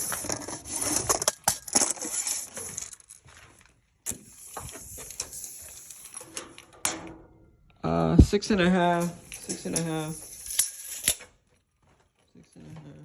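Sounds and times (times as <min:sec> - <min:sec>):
tape measure clicks and rattles: 0:00.0 - 0:03.2, 0:04.0 - 0:07.0, 0:09.0 - 0:11.4
sharp tape measure click: 0:04.1 - 0:06.7, 0:09.0 - 0:11.3.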